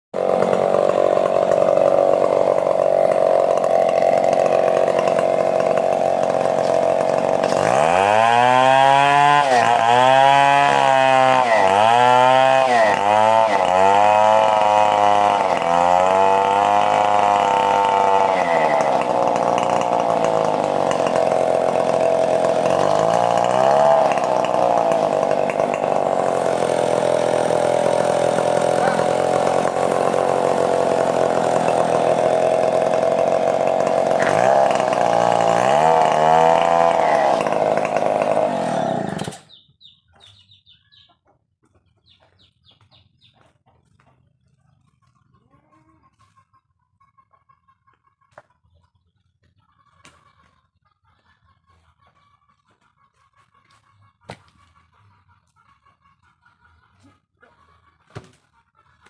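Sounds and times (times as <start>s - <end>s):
chainsaw engine revving: 0.2s - 39.7s.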